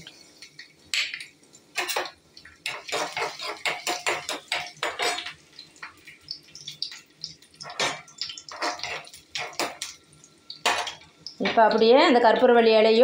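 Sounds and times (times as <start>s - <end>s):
metal spoon scraping metal pan: 1.8s - 5.4s, 7.6s - 9.8s.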